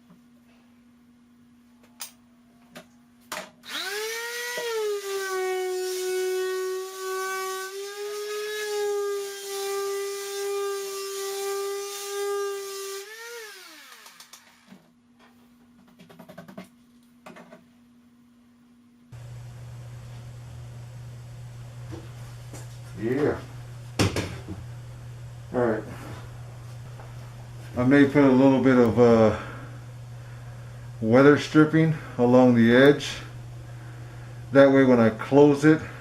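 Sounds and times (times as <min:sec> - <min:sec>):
electric sander whining: 0:03.7 - 0:14.4.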